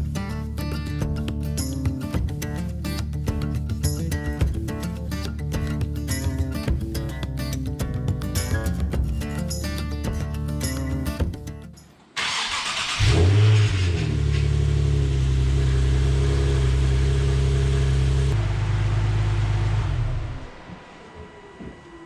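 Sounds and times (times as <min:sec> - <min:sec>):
car engine starting and idling: 0:12.2 - 0:22.0.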